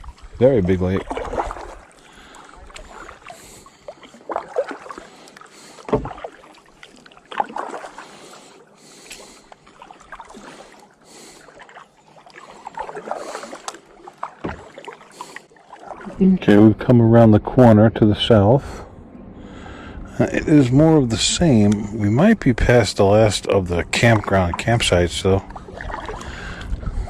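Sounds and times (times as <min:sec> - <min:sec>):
paddle splashing into water: 0:00.0 - 0:16.2, 0:23.9 - 0:26.8
water dripping off paddle: 0:00.9 - 0:16.2, 0:24.1 - 0:26.7.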